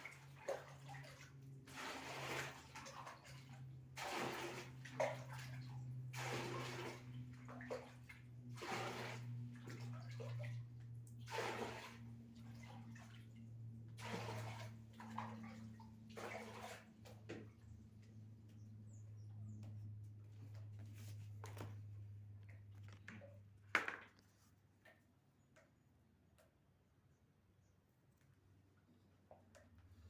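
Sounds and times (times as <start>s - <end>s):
water splashing as poured out: 0.1s - 8.0s, 8.6s - 10.5s, 11.2s - 13.1s, 14.0s - 16.9s.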